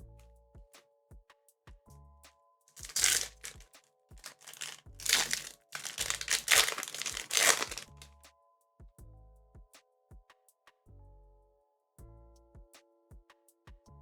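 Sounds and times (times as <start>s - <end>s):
foil wrapper crinkling: 2.8s - 3.6s, 4.2s - 8.0s.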